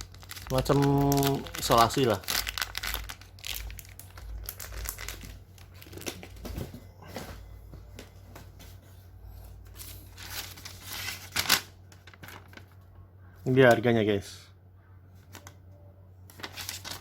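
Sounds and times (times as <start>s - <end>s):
plastic packaging crinkling: 0.0s - 6.6s, 9.7s - 12.9s, 16.3s - 17.0s.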